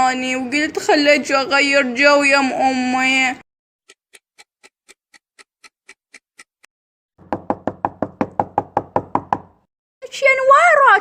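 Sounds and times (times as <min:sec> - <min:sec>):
rapid knocking on a door: 0:07.2 - 0:09.7.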